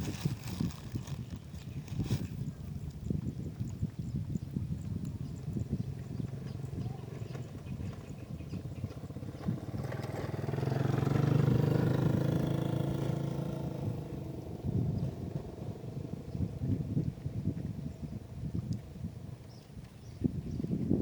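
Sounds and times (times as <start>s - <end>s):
vehicle engine passing by: 8.6s - 18.4s
steady low rumble: 12.9s - 21.0s.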